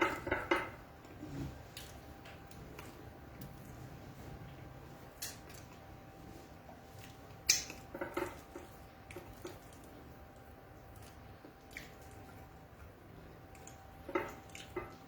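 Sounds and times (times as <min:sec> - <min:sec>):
wet mouth clicks and smacks: 0:07.0 - 0:07.9.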